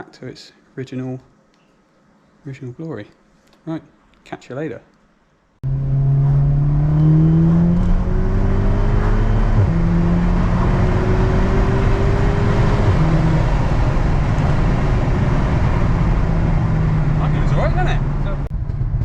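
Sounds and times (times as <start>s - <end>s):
car engine accelerating: 5.6s - 19.0s.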